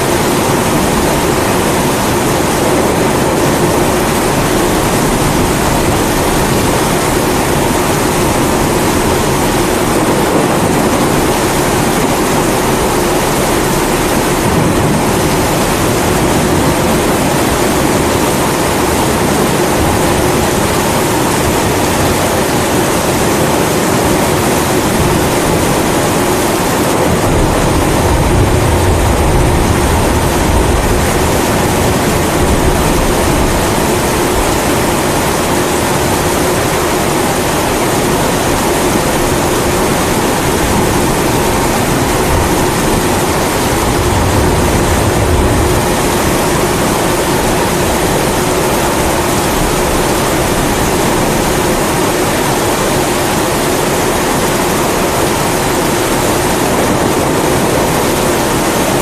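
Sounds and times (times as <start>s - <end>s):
rain hissing: 0.0s - 59.0s
low rumble of thunder: 0.2s - 22.1s, 24.8s - 36.0s, 37.9s - 51.9s.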